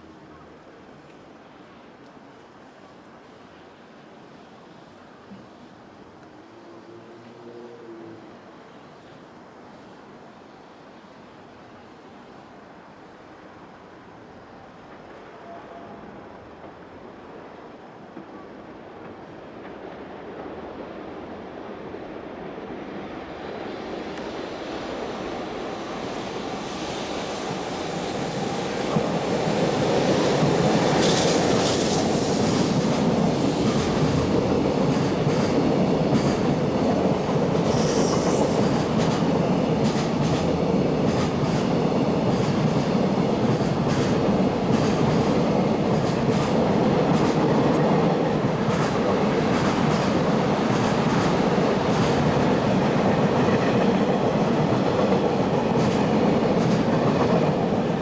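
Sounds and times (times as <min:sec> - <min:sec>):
train wheels clattering over rail joints: 0:25.0 - 0:47.8, 0:48.4 - 0:52.8.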